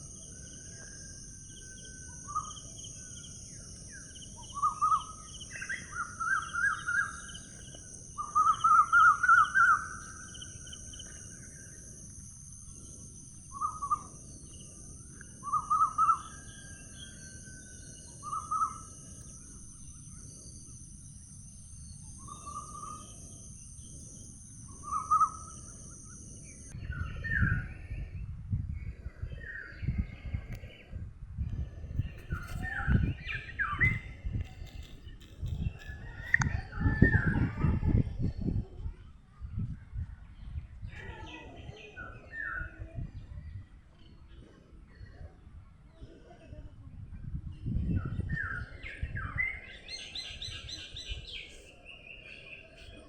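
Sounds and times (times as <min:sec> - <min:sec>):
high insect buzz: 0:18.2 - 0:26.7.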